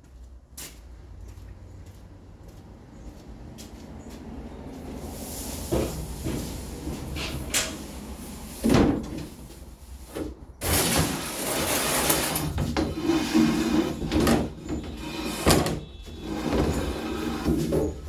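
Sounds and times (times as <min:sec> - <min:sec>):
power saw cutting board: 0:11.3 - 0:17.7.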